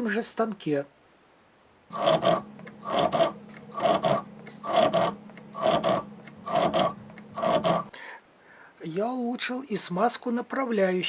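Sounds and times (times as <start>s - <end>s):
steady machine hum: 1.9s - 8.0s.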